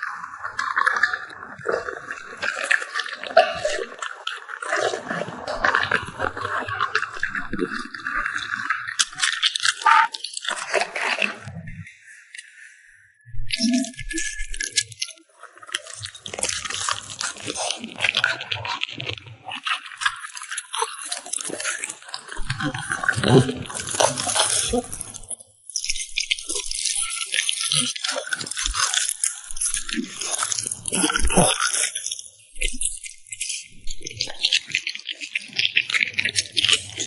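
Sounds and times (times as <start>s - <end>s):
dog crunching food: 16.0s - 19.0s, 23.2s - 25.4s, 26.4s - 33.6s.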